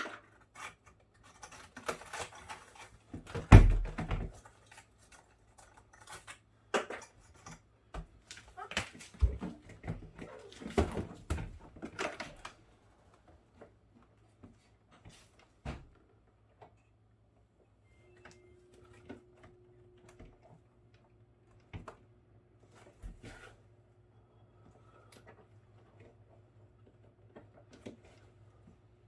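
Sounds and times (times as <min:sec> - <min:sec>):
faint steady tone: 0:17.6 - 0:20.1.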